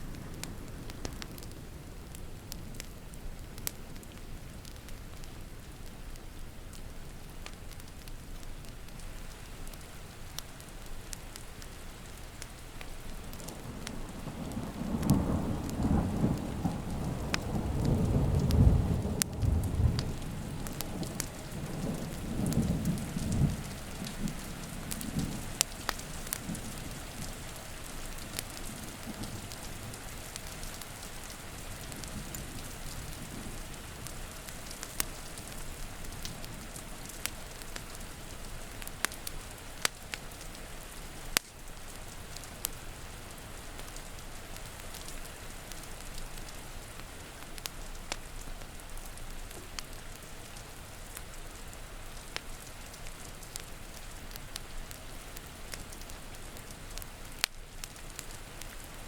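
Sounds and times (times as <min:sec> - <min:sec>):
steady rain: 0:00.0 - 0:59.0
wood fire crackling: 0:00.0 - 0:59.0
rolling thunder: 0:13.4 - 0:25.6.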